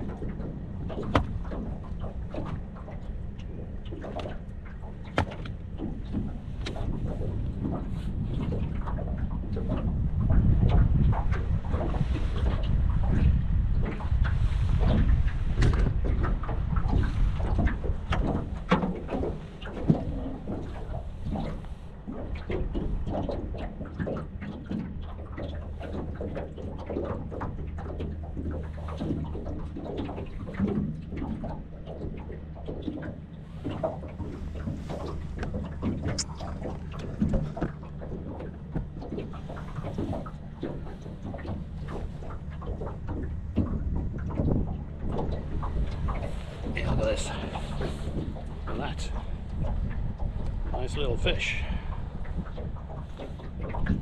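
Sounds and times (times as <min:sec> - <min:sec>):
knocks against hull: 0:00.0 - 0:51.0, 0:51.6 - 0:54.0
boat engine running: 0:00.0 - 0:54.0
water splashing against hull: 0:00.0 - 0:54.0.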